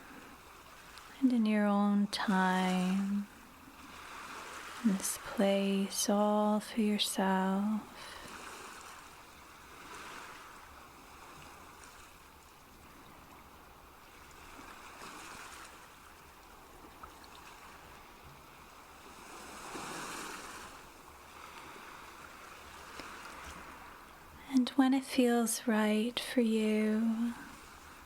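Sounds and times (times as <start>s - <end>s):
gentle moving water: 0.0s - 28.0s.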